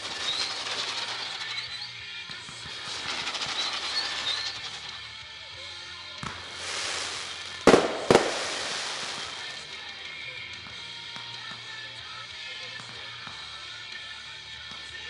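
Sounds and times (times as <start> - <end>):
fireworks bursting: 0.0 - 5.1, 6.2 - 10.2
rushing hiss: 2.7 - 4.9, 6.4 - 9.7
music soundtrack: 6.3 - 10.0
loud bangs: 6.4 - 9.7.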